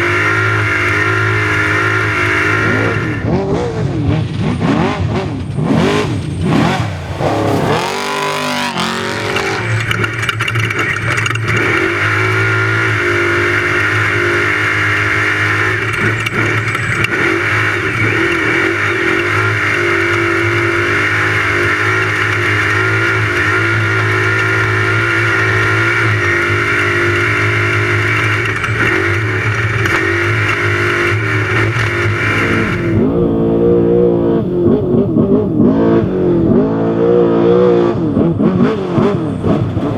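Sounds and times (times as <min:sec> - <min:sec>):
truck engine revving: 0:00.8 - 0:10.8, 0:23.5 - 0:39.9.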